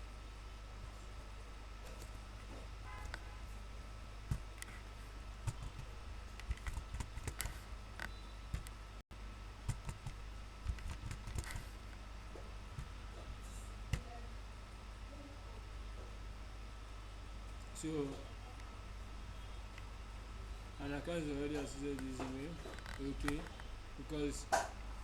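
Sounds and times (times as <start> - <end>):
steady low hum: 0.0 - 25.0
keyboard typing: 4.3 - 8.8, 9.7 - 11.8
mouse clicks: 5.5 - 8.8.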